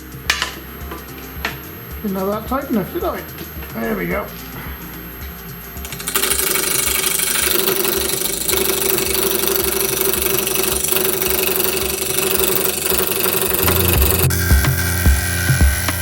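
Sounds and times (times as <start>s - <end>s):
gouge scraping spinning wood: 5.9s - 16.0s
wood lathe humming: 5.9s - 16.0s.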